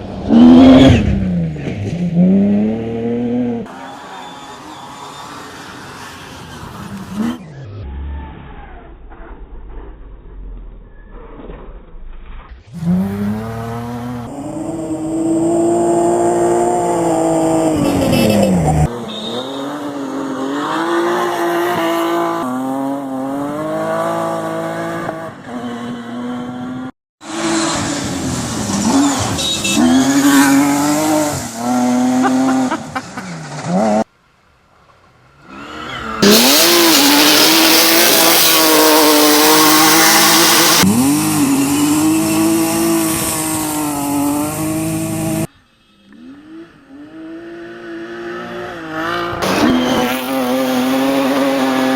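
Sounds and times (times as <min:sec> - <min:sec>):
car engine revving: 0:12.7 - 0:32.8, 0:35.5 - 0:45.5, 0:46.2 - 0:51.9.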